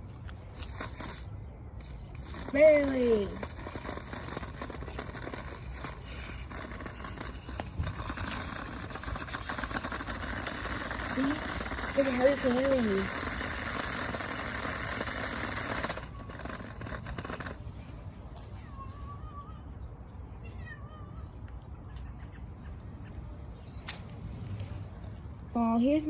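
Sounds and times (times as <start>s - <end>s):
toy car electric motor whine: 0.0s - 17.9s.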